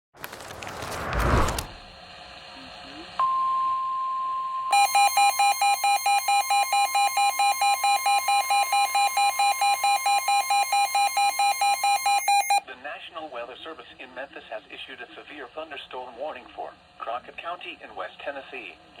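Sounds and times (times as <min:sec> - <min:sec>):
steady warning alert tone: 0:03.2 - 0:12.6.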